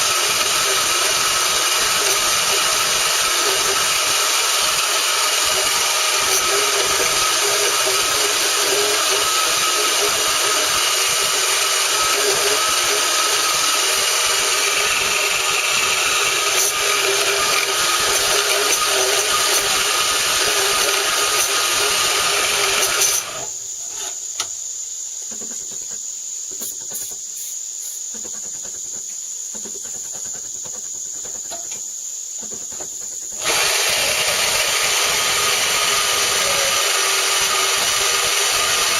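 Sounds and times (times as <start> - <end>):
band saw cutting metal: 0.0 - 24.2, 33.4 - 38.9.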